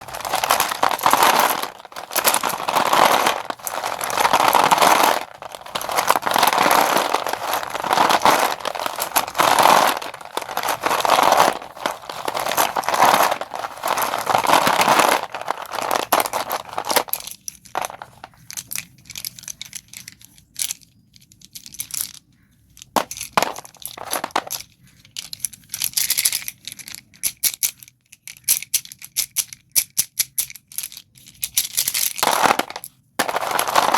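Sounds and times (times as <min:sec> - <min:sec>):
chalk being crushed: 0:00.0 - 0:17.2, 0:32.2 - 0:33.9
chalk crumbs crackling: 0:00.0 - 0:17.2.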